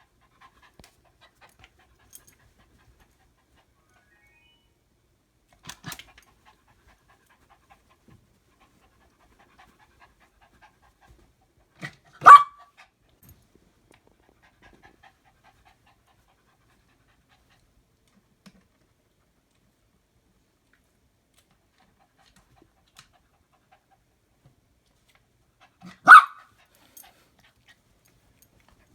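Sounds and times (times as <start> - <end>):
dog barking: 12.2 - 12.7, 25.9 - 26.5.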